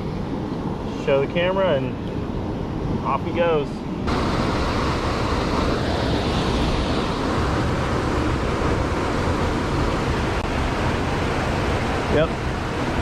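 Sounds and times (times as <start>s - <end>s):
waterfall and rushing stream: 0.0s - 13.0s.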